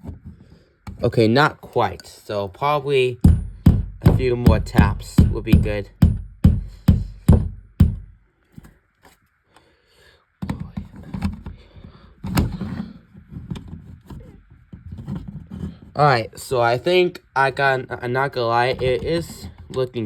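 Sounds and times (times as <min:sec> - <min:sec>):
sharp tapping on wall plug: 0:03.2 - 0:08.1
handling noise: 0:03.2 - 0:08.8.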